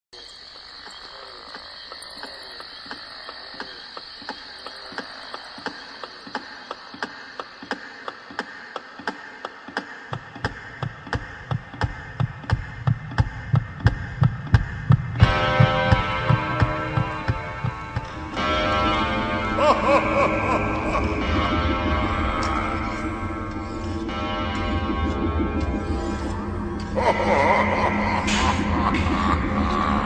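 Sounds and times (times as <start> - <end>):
deep throbbing heartbeat pulse: 10.1 - 30.0.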